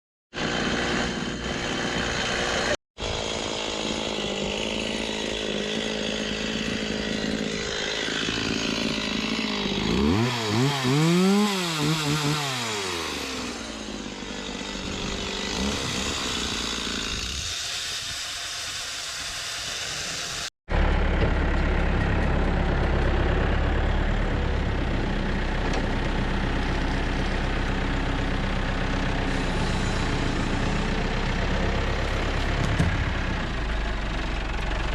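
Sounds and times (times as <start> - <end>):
engine-driven saw: 0.3 - 34.9
heavy engine low rumble: 13.5 - 17.5, 20.3 - 34.9.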